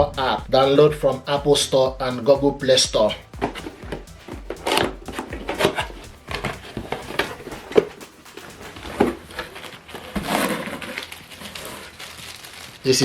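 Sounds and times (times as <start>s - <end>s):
packaging rustle: 6.8s - 13.0s.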